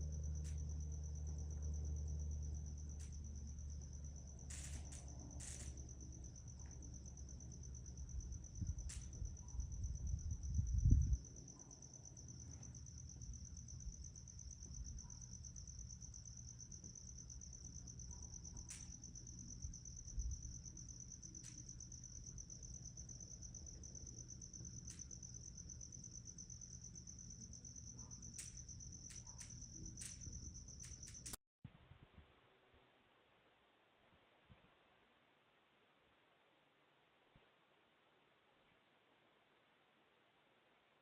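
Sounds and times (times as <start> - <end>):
crickets chirping: 0.0 - 31.4.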